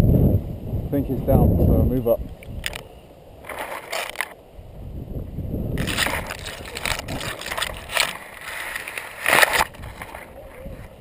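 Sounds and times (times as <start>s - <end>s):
wind rumble on microphone: 0.0s - 11.0s
rustling and crunching footsteps: 3.4s - 4.4s, 5.7s - 11.0s.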